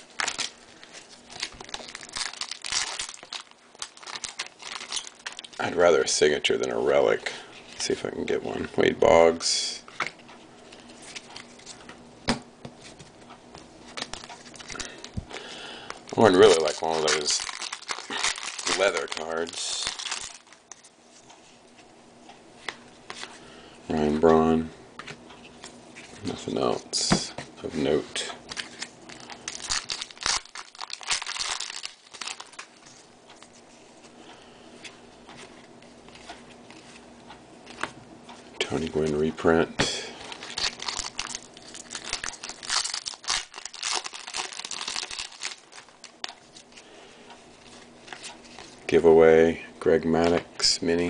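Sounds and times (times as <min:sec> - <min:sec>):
foil wrapper crinkling and tearing: 0:00.2 - 0:06.4, 0:16.0 - 0:20.8, 0:28.5 - 0:32.9, 0:40.2 - 0:46.8
cards rustling: 0:00.2 - 0:09.0, 0:09.9 - 0:12.0, 0:12.7 - 0:21.8, 0:25.0 - 0:33.7, 0:34.8 - 0:38.0, 0:40.0 - 0:46.9, 0:47.5 - 0:48.9.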